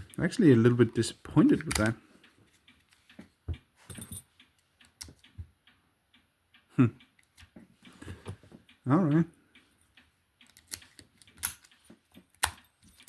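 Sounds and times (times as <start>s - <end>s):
padlock and lock picks clicking: 1.6s - 2.0s, 10.4s - 13.0s
light jingle: 3.9s - 4.3s.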